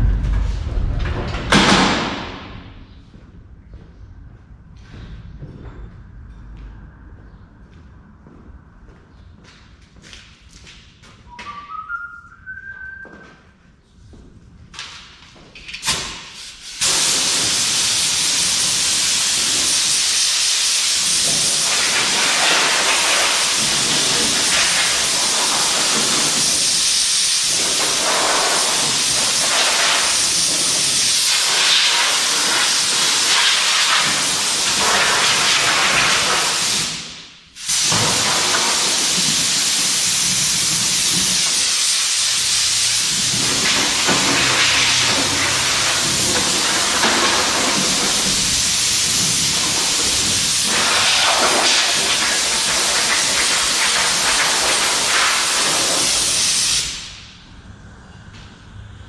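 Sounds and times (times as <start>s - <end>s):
loud hissing spray: 15.8s - 57.4s.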